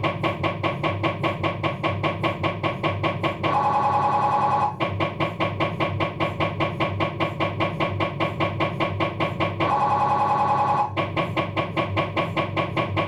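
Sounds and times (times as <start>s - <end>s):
mri scanner knocking: 0.0s - 13.0s
mri scanner buzzing: 3.4s - 4.8s, 9.6s - 11.0s.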